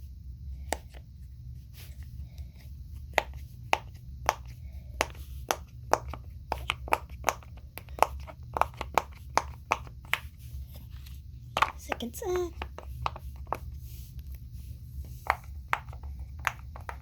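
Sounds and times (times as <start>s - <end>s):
pop-it toy bubbles popping: 5.0s - 10.2s.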